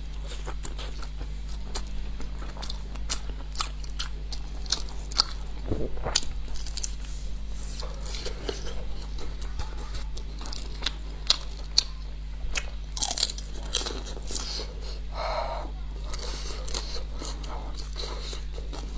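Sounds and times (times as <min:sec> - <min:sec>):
biting and chewing sausage: 0:00.0 - 0:18.9.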